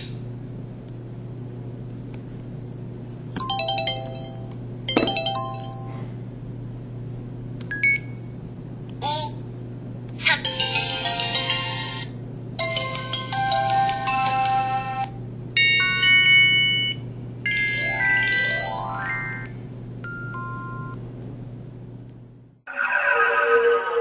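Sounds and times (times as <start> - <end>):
mobile phone ringtone melodies: 17.6 - 19.5.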